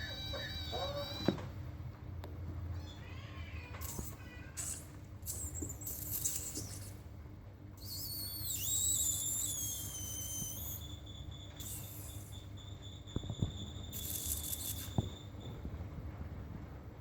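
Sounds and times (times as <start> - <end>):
otter high-pitched call: 7.8 - 15.3
otter hissing: 11.6 - 12.4.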